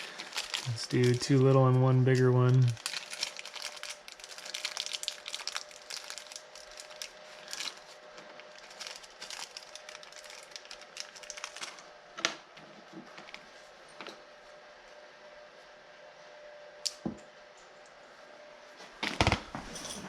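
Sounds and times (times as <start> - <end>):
plastic crinkling and rustling: 0.0 - 11.9.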